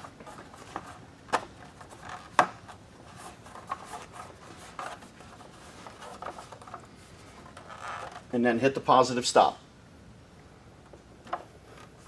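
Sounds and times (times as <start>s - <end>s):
faint plastic rubbing: 0.0s - 8.3s.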